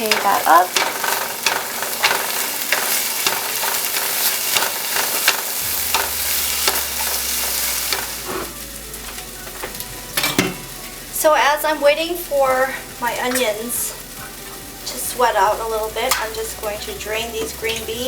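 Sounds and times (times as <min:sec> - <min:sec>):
food sizzling in a frying pan: 0:00.0 - 0:18.0.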